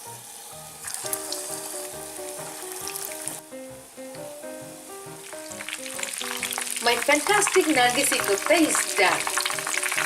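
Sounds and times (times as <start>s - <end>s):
meatballs sizzling in hot oil: 0.0s - 10.0s
simple melodic background music: 0.0s - 10.0s.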